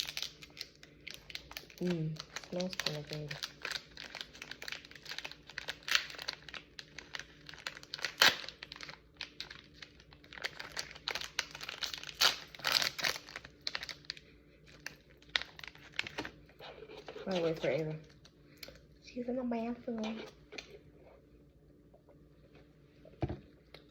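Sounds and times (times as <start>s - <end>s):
snack packaging crinkling: 0.0s - 18.9s.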